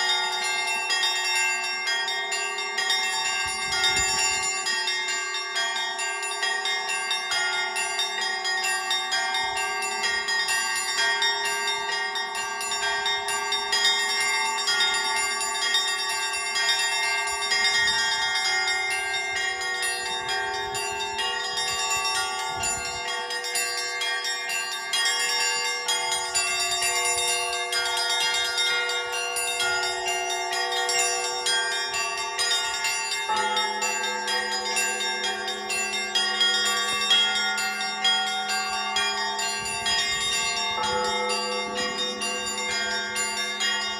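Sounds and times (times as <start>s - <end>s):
church bells ringing: 0.0s - 43.9s
deep bell ringing: 2.2s - 43.9s.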